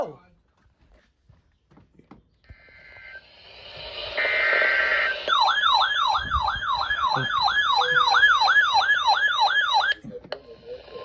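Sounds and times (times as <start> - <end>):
buzzy data tones: 2.6 - 9.8
falling siren-like alert tone: 5.3 - 10.0.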